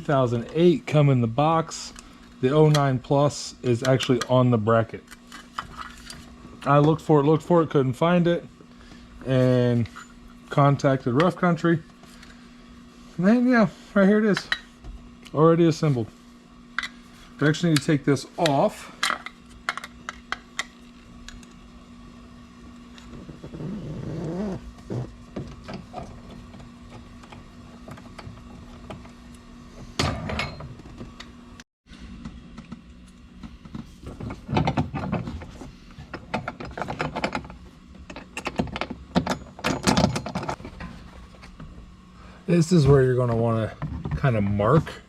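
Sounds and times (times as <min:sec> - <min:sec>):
faint steady hum: 0:00.0 - 0:45.0
hand tools and plastic parts rattling: 0:33.7 - 0:40.9.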